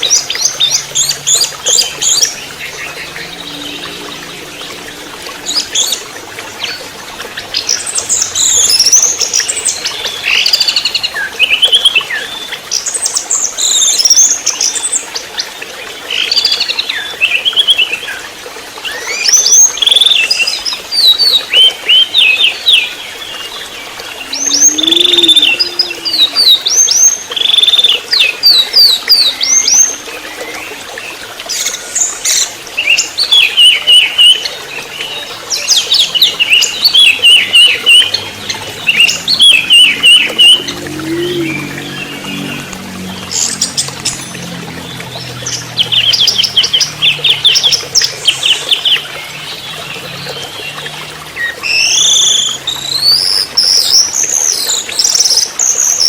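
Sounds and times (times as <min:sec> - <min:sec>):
thrush singing: 0:24.1 - 0:27.5, 0:36.0 - 0:50.5.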